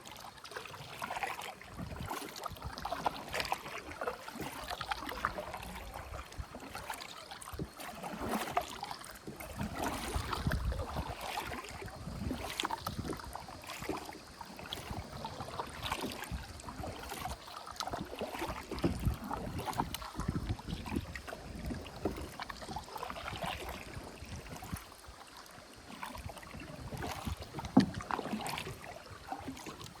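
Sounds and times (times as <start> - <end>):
kayak paddle splashing in water: 0.0 - 30.0.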